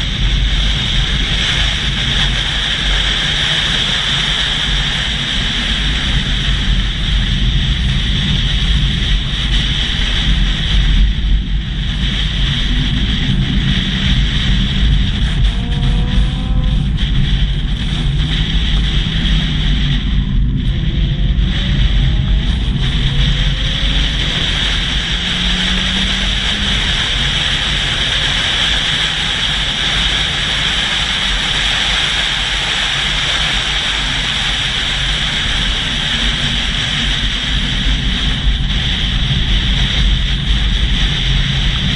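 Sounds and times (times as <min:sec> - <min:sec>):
low engine rumble: 0:00.0 - 0:41.9
vehicle noise: 0:00.0 - 0:41.9
wind rush on microphone: 0:00.0 - 0:41.9.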